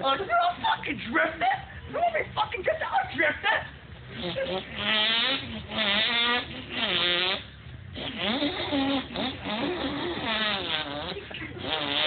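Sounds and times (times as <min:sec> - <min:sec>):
man imitating revving engine: 0:04.2 - 0:12.0.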